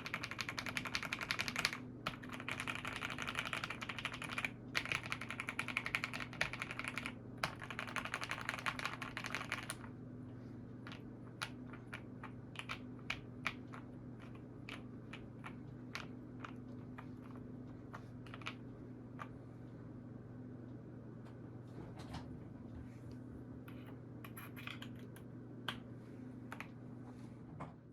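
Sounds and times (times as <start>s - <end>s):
mechanical keyboard typing: 0.0s - 9.9s, 10.9s - 16.6s, 18.2s - 18.6s.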